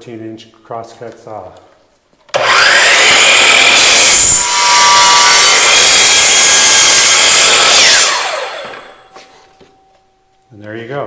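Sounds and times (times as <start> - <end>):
saw cutting wooden board: 2.3 - 9.2
miter saw motor whine: 2.3 - 9.3.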